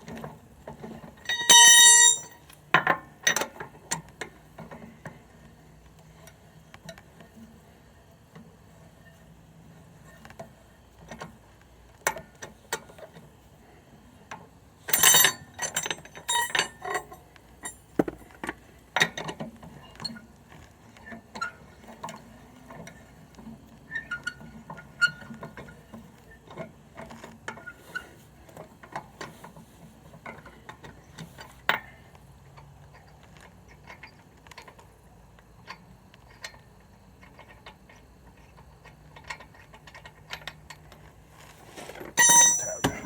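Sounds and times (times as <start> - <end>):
tire iron clanking on lug nuts: 0.8 - 3.6, 14.9 - 18.2, 41.8 - 43.0
lug nuts clinking: 1.3 - 3.4, 14.9 - 17.8, 41.7 - 43.0.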